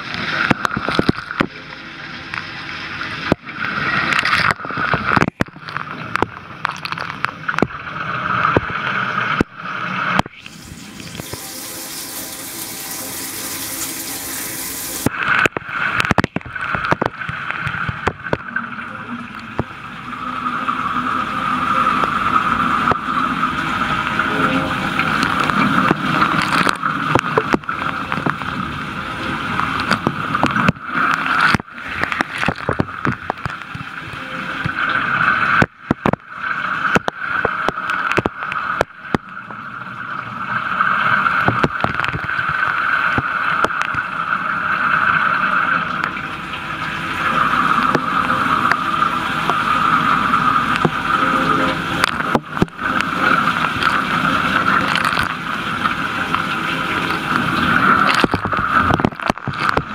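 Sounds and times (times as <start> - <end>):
wash pump humming: 7.3 - 38.8, 42.3 - 59.9
dishwasher water spraying: 10.5 - 15.1.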